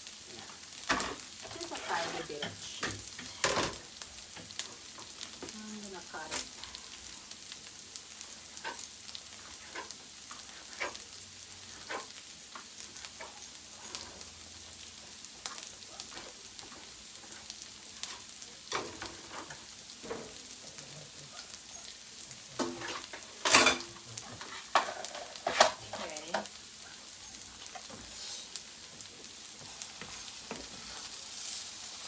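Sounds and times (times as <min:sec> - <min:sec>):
eggs sizzling in a pan: 0:00.0 - 0:32.0
spatula scraping and tapping pan: 0:00.8 - 0:05.6, 0:08.2 - 0:14.4, 0:15.2 - 0:20.6, 0:22.5 - 0:26.6, 0:27.6 - 0:31.7.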